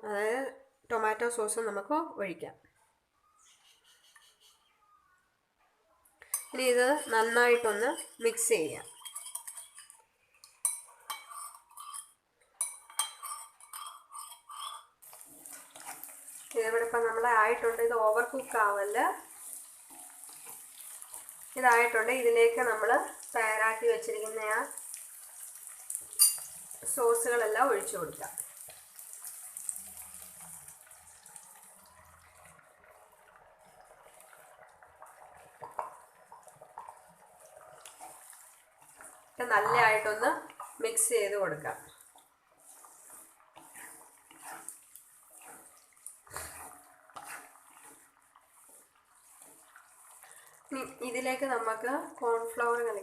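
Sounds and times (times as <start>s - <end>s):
metal utensil scraping a pan: 6.2s - 31.3s, 35.6s - 51.9s
sauce hissing in hot pan: 18.1s - 23.8s, 24.6s - 27.0s.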